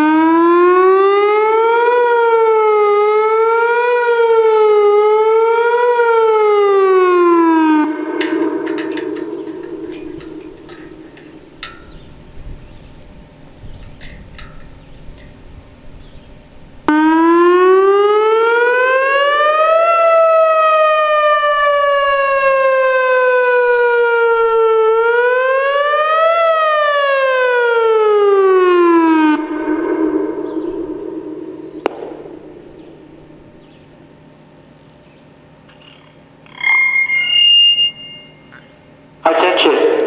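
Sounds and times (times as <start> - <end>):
siren echo: 0.0 - 12.3, 16.9 - 34.0, 36.5 - 38.6
electronic warning siren: 0.0 - 12.7, 16.9 - 35.1, 36.5 - 38.8.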